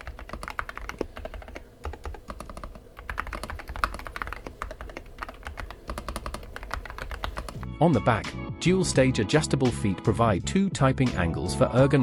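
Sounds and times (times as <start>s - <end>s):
mechanical keyboard typing: 0.0s - 7.6s.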